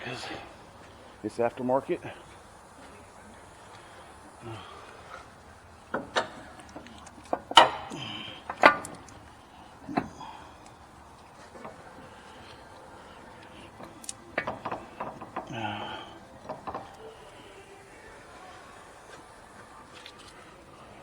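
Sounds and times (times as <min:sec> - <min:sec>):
metal parts knocking and clanking: 0:05.9 - 0:09.3, 0:13.4 - 0:17.0.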